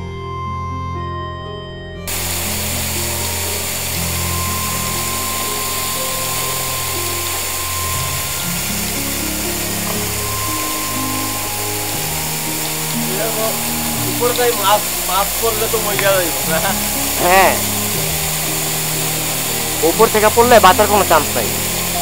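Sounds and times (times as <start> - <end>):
music of held low notes: 0.0 - 22.0
waterfall rushing: 2.1 - 22.0.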